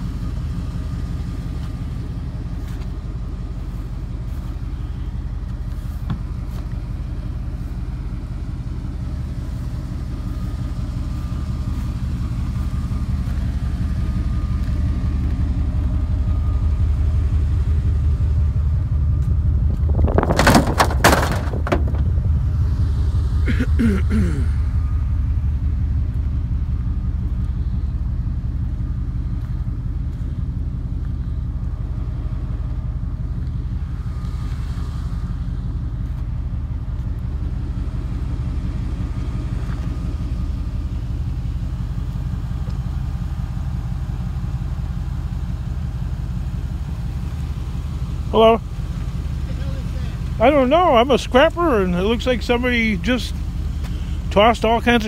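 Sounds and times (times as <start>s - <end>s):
vehicle engine low rumble: 0.0s - 55.0s
clatter of sharp knocks: 20.0s - 22.2s.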